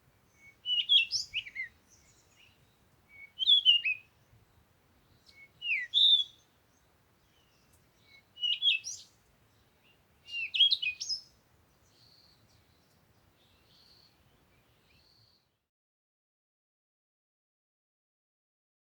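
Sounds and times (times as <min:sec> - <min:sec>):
faint buzzy bird calls: 0:00.0 - 0:15.6
songbird singing: 0:00.0 - 0:15.6.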